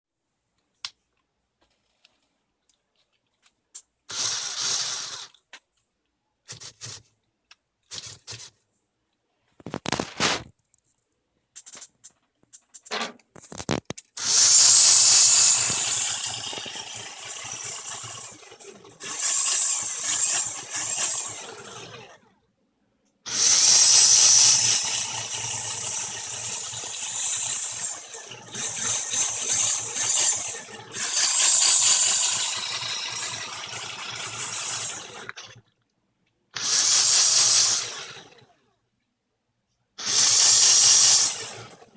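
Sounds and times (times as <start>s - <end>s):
electric motors whining: 14.2s - 22.2s, 23.3s - 35.4s, 36.6s - 38.4s, 40.0s - 41.9s.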